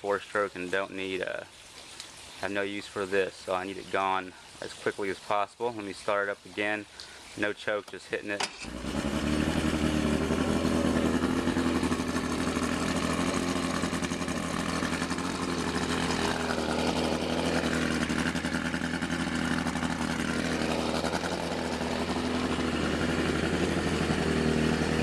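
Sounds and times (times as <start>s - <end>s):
outboard motor idling: 8.3s - 25.0s.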